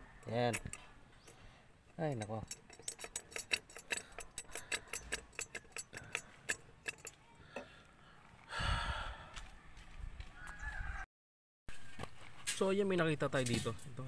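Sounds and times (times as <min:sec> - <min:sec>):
sharp metallic tool clicks: 0:00.2 - 0:00.8, 0:02.1 - 0:07.2.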